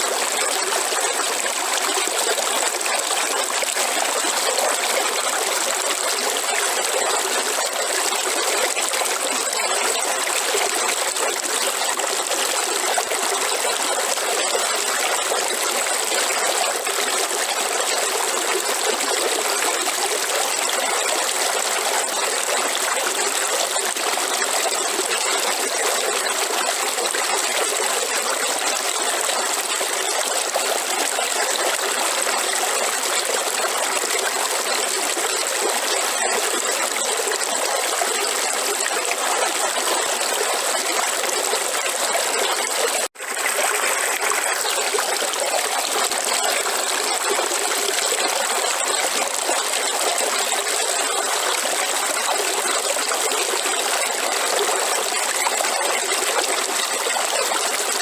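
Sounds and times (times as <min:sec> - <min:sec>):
river water flowing: 0:00.0 - 0:07.6, 0:29.0 - 0:58.0.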